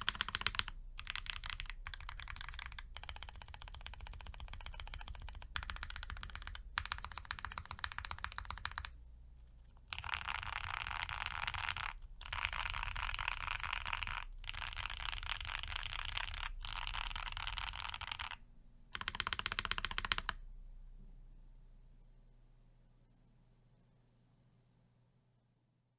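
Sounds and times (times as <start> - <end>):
fast typing on mechanical keyboard: 0.0 - 9.0, 9.8 - 18.4, 19.0 - 20.4.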